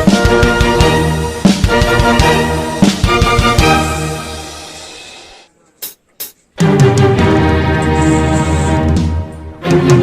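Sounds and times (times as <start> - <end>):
music with low beat: 0.0 - 4.0.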